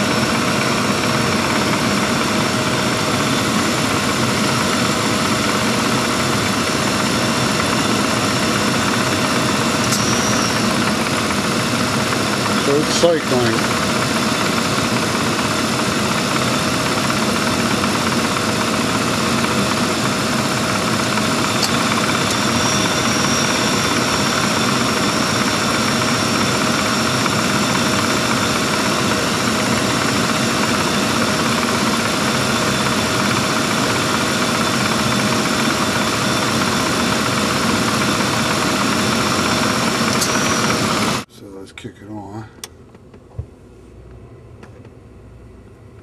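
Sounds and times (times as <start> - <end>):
thin high whine: 0.0 - 41.3.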